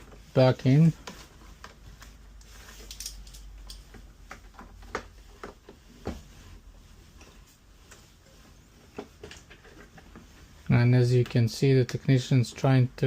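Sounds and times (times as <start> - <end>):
plastic parts clicking: 2.8 - 5.1.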